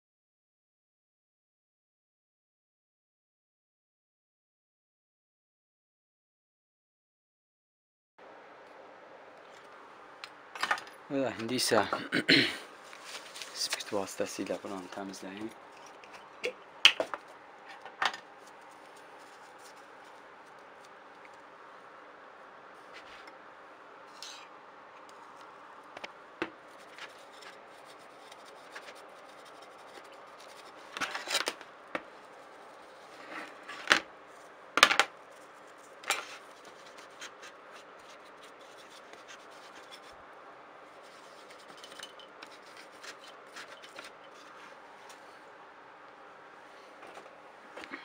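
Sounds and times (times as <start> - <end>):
scratching and rubbing on circuit board: 12.8 - 16.3, 17.2 - 21.0, 26.6 - 40.2, 40.9 - 44.8.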